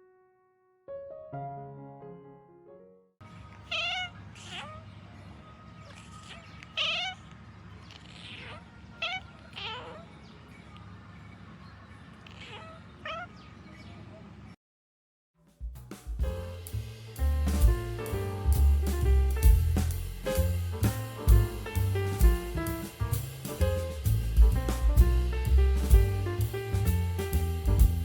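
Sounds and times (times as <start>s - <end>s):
cat meowing: 3.4s - 10.5s, 12.1s - 14.0s.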